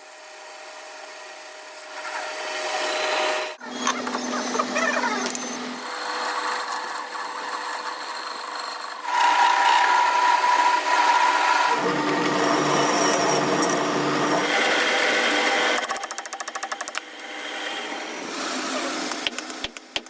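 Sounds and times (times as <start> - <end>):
power tool high-pitched whine: 0.0 - 19.1
machine hum: 2.8 - 16.1
rapid mechanical ticking: 15.4 - 17.0.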